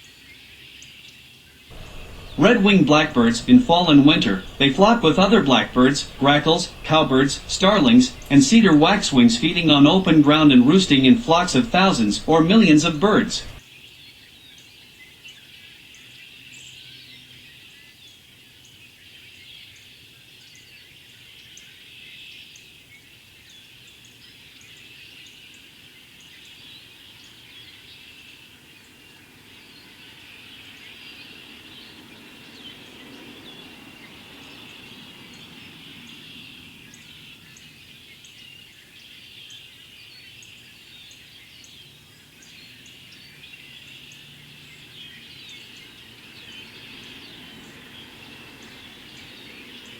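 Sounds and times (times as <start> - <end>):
flock of birds chattering: 1.7 - 13.6.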